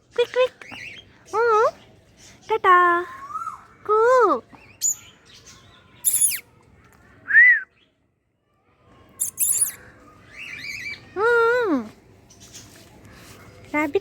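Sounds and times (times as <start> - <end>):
parrots calling: 6.1 - 6.4, 9.2 - 9.8.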